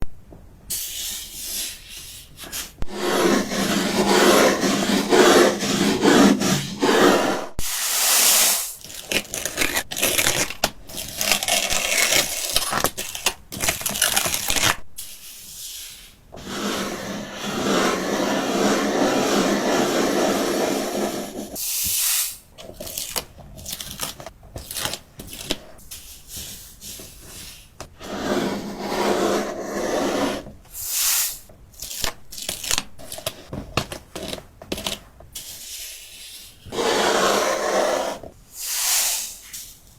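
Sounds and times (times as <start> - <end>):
gritty scraping on a surface: 2.9 - 7.6, 16.4 - 21.6, 28.0 - 30.5, 35.6 - 38.3.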